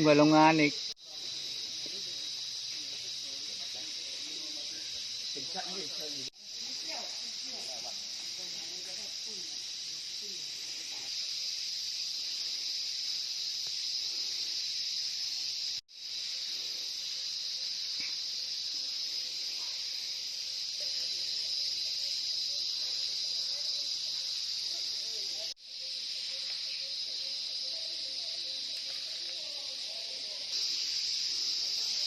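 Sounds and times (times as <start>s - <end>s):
forest insects chorus: 0.0s - 32.0s.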